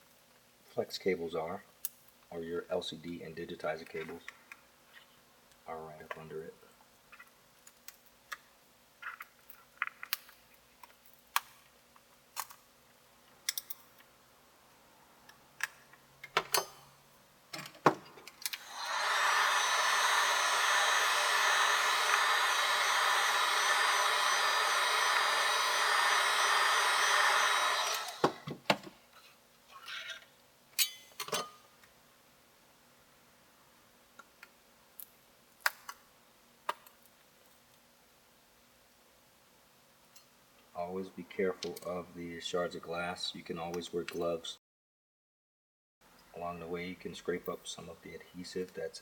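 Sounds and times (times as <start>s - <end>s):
heat gun blowing: 18.6s - 28.6s.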